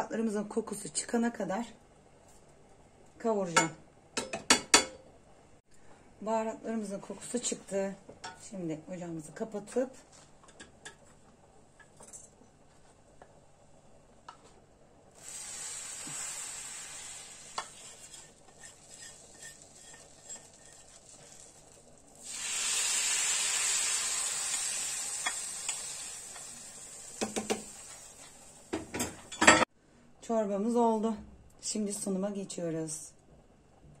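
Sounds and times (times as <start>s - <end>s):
butter and spices sizzling: 15.1s - 29.6s.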